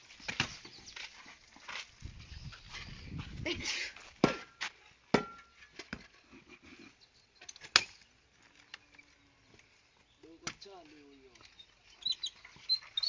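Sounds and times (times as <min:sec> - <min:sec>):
metal hand tool striking stone: 0:04.2 - 0:06.1.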